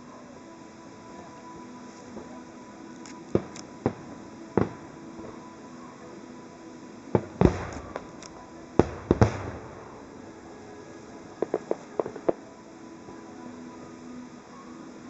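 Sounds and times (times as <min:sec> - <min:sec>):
firework shells bursting: 0:07.1 - 0:10.5.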